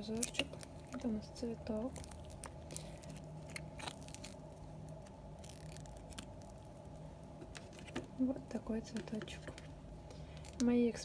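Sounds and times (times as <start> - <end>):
faint low hum: 0.0 - 11.0.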